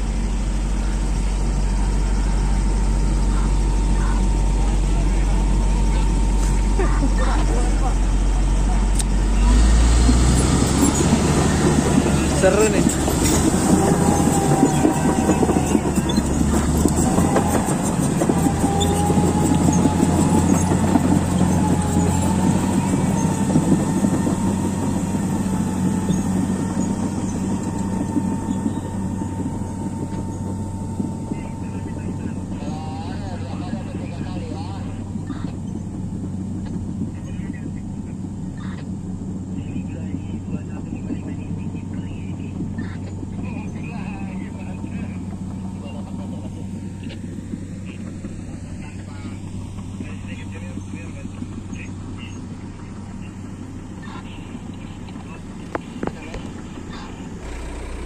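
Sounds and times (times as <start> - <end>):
diesel engine droning: 0.0 - 58.0
wavering whine: 0.0 - 58.0
steel tracks rattling and clanking: 0.6 - 37.6.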